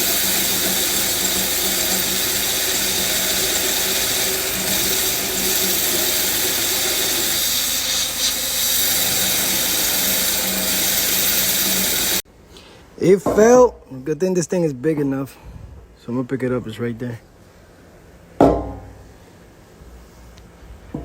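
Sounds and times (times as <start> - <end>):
electric drill cutting with hole saw: 0.0 - 12.2.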